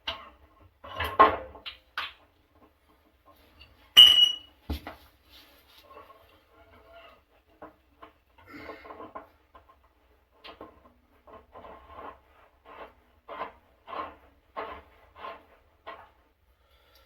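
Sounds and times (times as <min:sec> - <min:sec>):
scraping rubbing strokes: 0:11.1 - 0:16.3.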